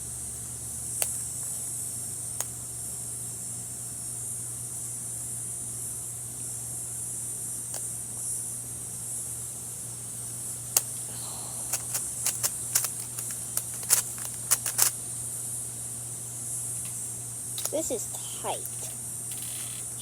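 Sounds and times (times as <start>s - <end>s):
low hum and hiss: 0.0s - 20.0s
puzzle cube plastic clicks: 11.7s - 15.0s, 17.6s - 20.0s.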